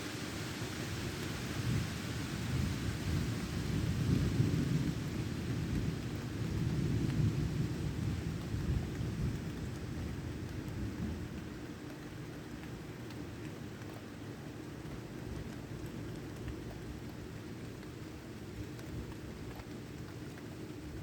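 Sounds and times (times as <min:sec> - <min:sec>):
heavy rain falling: 0:00.0 - 0:21.0
rolling thunder rumble: 0:01.7 - 0:11.4.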